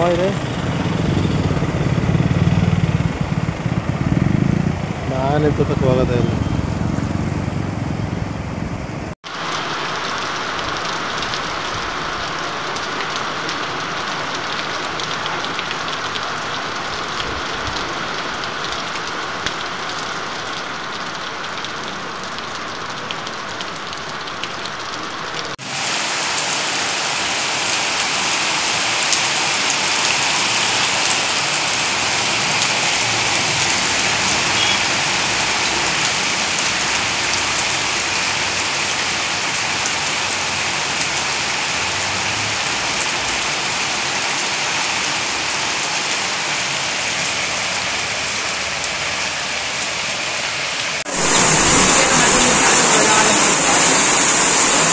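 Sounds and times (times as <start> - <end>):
steady rain falling: 0.0 - 7.8, 8.5 - 54.9.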